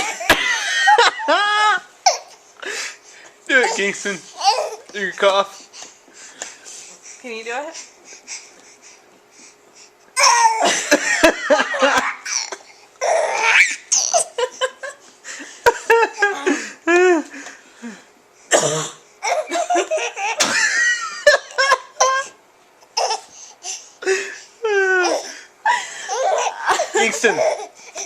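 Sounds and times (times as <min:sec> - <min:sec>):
baby laughing: 0:03.6 - 0:04.9, 0:10.2 - 0:11.0, 0:11.7 - 0:15.0, 0:19.2 - 0:22.4, 0:26.0 - 0:28.0
woman coughing: 0:18.5 - 0:19.7.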